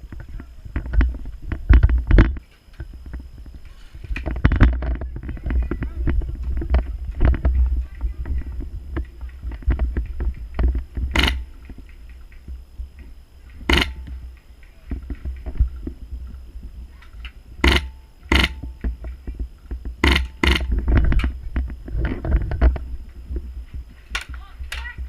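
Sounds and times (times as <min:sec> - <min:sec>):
low rumble: 0:00.0 - 0:25.0
airsoft rifle shots: 0:11.1 - 0:11.7, 0:13.5 - 0:14.2, 0:17.6 - 0:18.9, 0:20.0 - 0:20.8.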